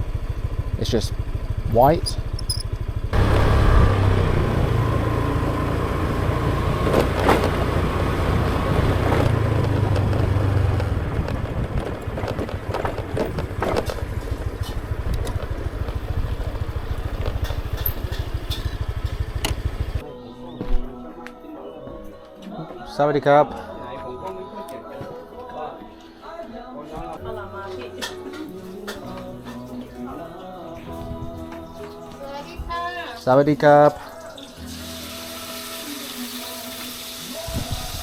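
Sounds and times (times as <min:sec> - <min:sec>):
motorbike engine running: 0:00.0 - 0:20.0.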